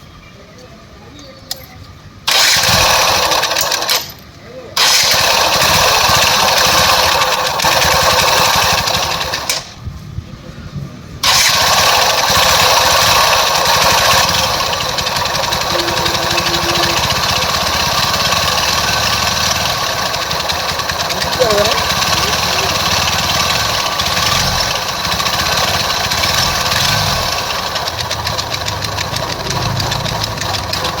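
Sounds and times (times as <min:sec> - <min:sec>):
motorcycle engine running: 0:04.8 - 0:09.5, 0:11.3 - 0:31.0.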